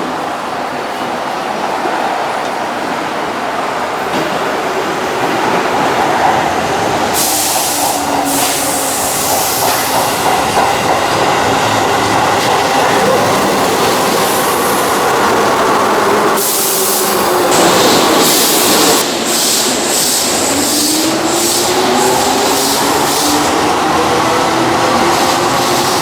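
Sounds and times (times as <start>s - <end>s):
electric train rumbling on rails: 0.0s - 26.0s
hiss burst: 7.2s - 10.6s.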